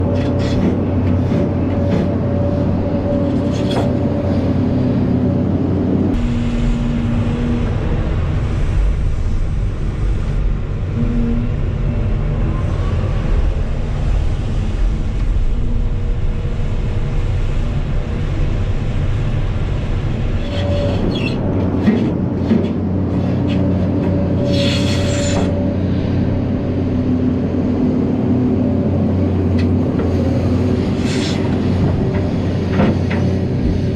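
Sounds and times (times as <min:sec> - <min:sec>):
heavy diesel engines droning: 0:00.0 - 0:33.9.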